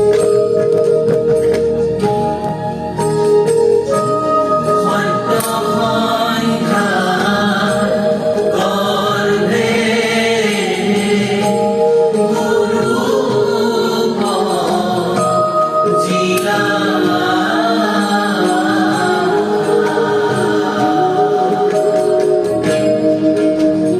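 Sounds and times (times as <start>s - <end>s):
group chant-like singing: 4.9s - 15.4s, 16.1s - 21.9s.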